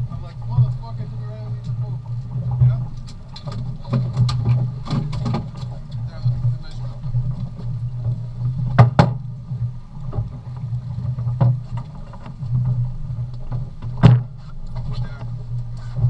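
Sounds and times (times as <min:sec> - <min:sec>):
boat engine humming: 0:00.0 - 0:16.0
sharp knocks and thumps: 0:02.5 - 0:05.8, 0:08.6 - 0:09.3, 0:11.0 - 0:12.8, 0:13.5 - 0:15.0.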